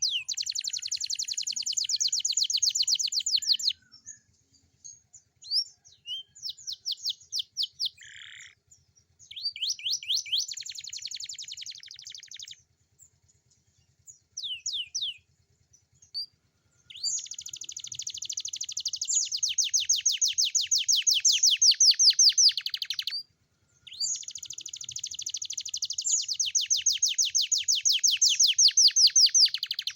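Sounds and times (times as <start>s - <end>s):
canary twittering and trilling: 0.0s - 3.8s, 5.4s - 8.6s, 9.2s - 12.6s, 14.4s - 15.2s, 16.9s - 23.2s, 23.9s - 29.9s.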